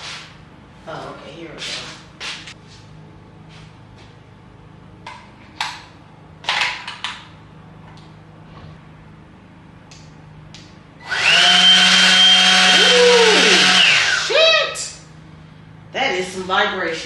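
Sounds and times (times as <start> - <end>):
orbital sander running with whine: 11.0 - 14.3.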